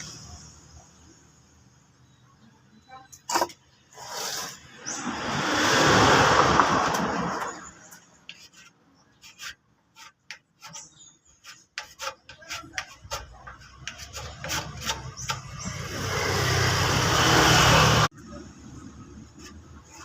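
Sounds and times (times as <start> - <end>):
hand scraping body filler: 6.6 - 18.1.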